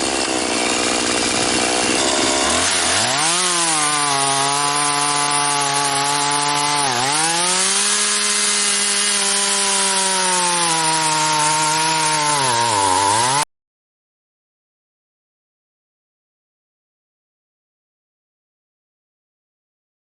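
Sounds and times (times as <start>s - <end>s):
chainsaw cutting wood: 0.0s - 13.5s.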